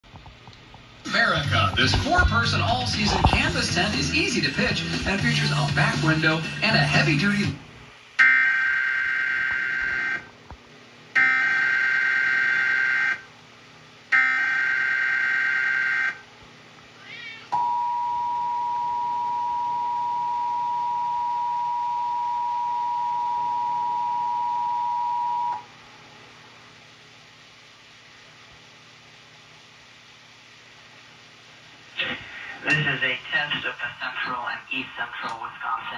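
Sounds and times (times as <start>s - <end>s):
steady two-tone attention signal: 17.6s - 25.6s.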